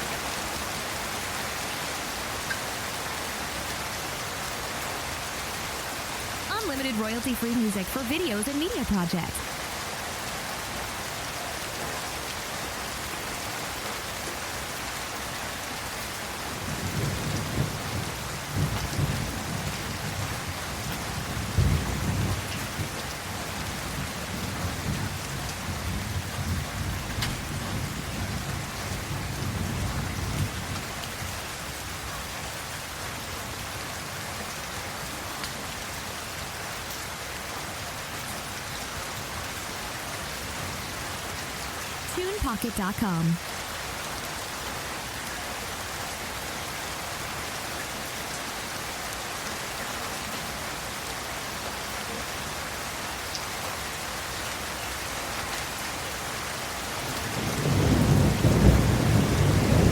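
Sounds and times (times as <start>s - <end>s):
steady rain falling: 0.0s - 59.9s
rolling thunder: 57.3s - 59.9s.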